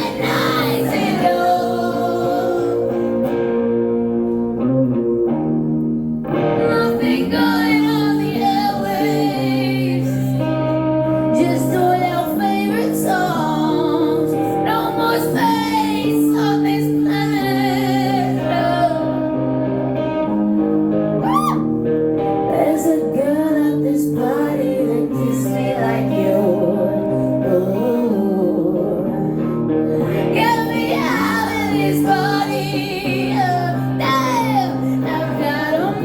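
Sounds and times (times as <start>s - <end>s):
woman singing wordless lines: 0.0s - 3.2s, 6.6s - 10.5s, 11.3s - 19.3s, 22.5s - 36.0s
sustained guitar chords: 0.0s - 36.0s.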